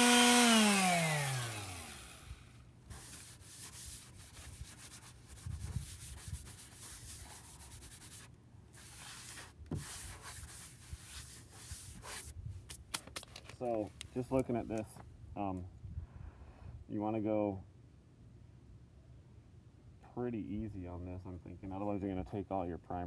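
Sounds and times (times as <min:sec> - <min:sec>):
power sander winding down: 0:00.0 - 0:02.5
sandpaper rubbing strokes: 0:00.0 - 0:12.8
small scrapes and clicks: 0:08.8 - 0:15.0.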